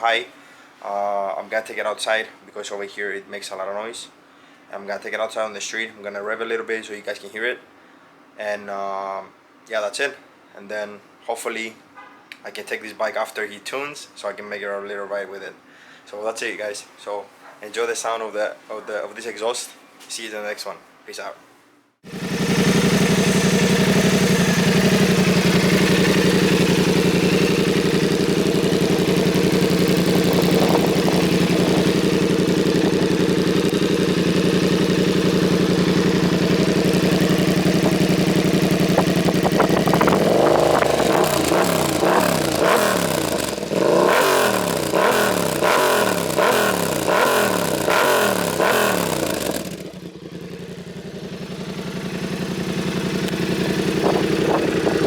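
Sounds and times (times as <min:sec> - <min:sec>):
engine revving: 0:22.0 - 0:55.0
motorcycle engine idling: 0:22.1 - 0:55.0.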